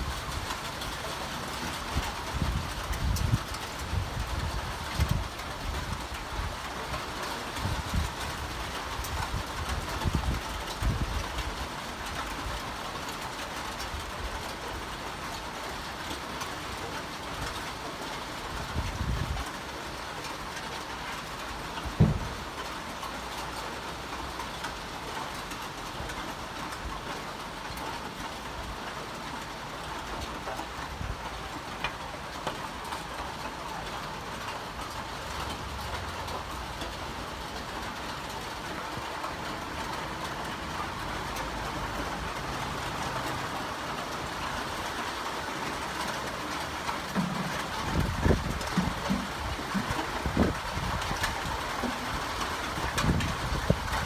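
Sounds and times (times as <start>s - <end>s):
steady rain: 0.0s - 54.0s.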